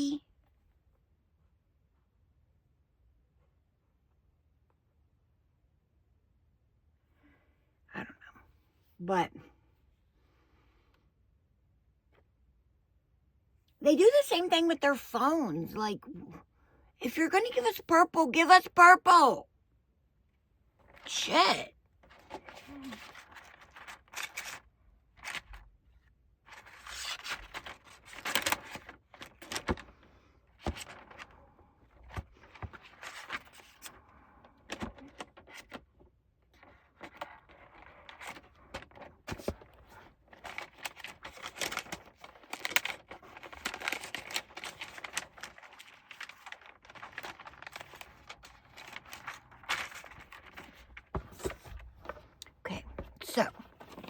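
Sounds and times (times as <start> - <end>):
packaging rustling and tearing: 22.1 - 25.4, 36.6 - 51.8.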